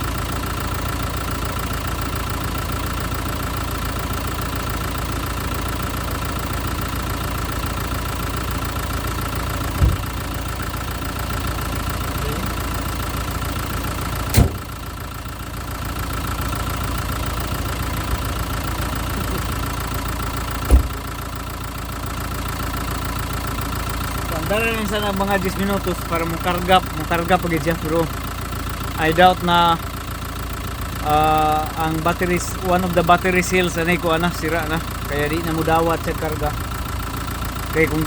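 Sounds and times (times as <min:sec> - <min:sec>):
car engine idling: 0:00.0 - 0:38.0
short thumps: 0:09.8 - 0:10.2, 0:14.3 - 0:14.7, 0:20.6 - 0:21.0.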